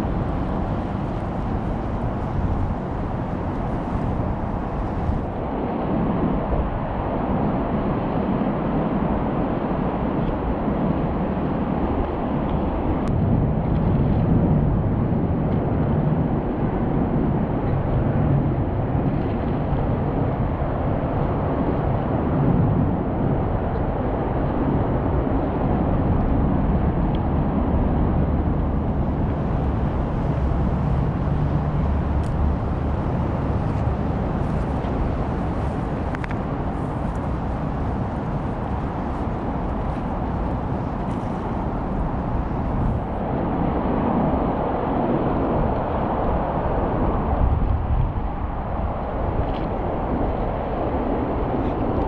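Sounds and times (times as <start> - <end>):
low outdoor rumble: 0.0 - 8.2, 10.0 - 52.0.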